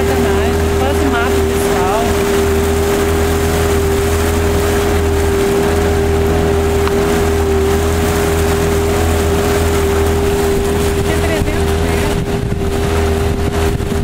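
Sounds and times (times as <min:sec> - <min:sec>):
motorboat engine running: 0:00.0 - 0:14.0.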